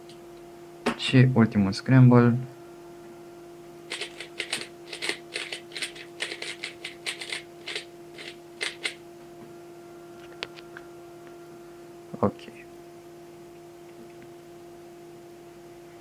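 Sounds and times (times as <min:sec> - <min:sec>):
puzzle cube plastic clicks: 0:03.9 - 0:09.0.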